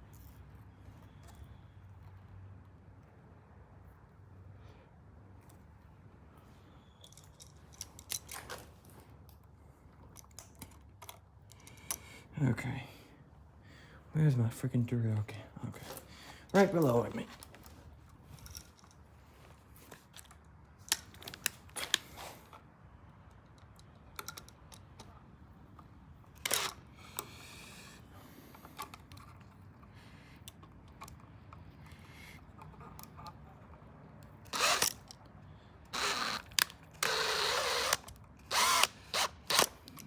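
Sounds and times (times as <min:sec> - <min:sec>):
tools and parts clicking: 0:06.8 - 0:12.1, 0:15.9 - 0:19.0, 0:19.8 - 0:22.6, 0:23.2 - 0:40.0
cordless drill running: 0:34.5 - 0:35.0, 0:35.9 - 0:39.9.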